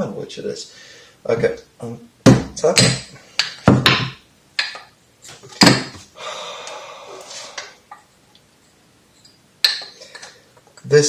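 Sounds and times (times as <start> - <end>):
rubber mallet knocks: 2.2 - 4.9.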